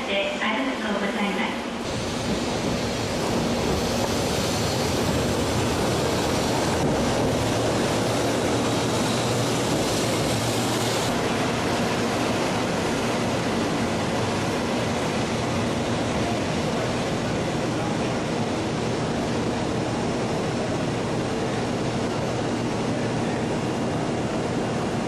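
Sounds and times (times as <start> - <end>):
high-speed train rushing: 0.0 - 25.0.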